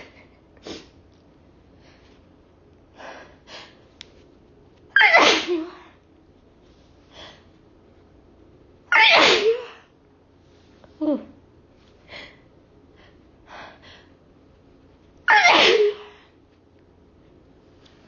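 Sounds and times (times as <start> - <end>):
woman sneezing: 5.0 - 5.9, 8.9 - 9.9, 15.3 - 16.2.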